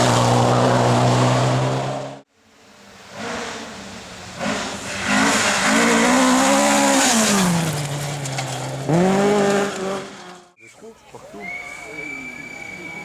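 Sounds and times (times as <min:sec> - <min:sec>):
rally car engine revving: 0:00.0 - 0:02.2, 0:03.0 - 0:10.6.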